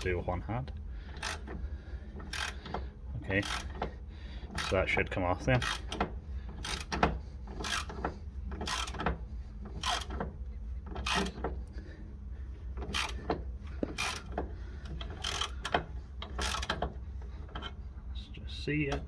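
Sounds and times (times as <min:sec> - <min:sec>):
socket ratchet clicking: 0:02.2 - 0:03.9, 0:05.6 - 0:09.2, 0:09.8 - 0:10.3, 0:10.9 - 0:11.5, 0:12.8 - 0:17.0.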